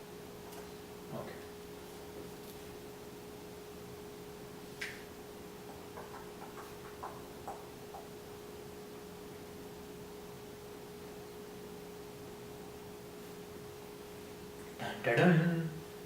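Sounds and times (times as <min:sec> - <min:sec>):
faint electrical hum: 0:00.0 - 0:16.0.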